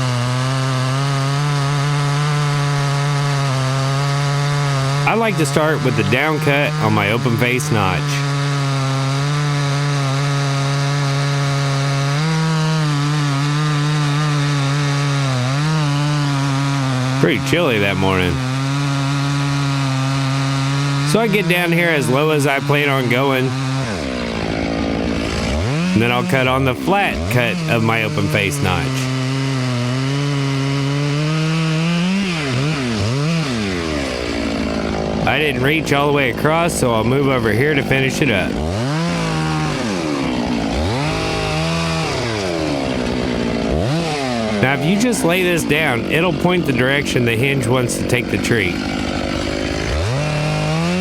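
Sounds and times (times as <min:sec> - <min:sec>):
chainsaw cutting wood: 0:00.0 - 0:51.0.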